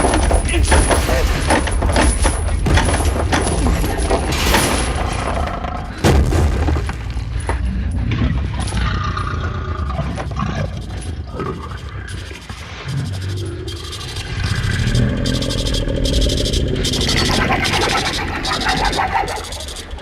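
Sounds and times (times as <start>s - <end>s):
deep rumble with crashing: 0.0s - 10.1s
sudden loud bang: 6.0s - 7.4s.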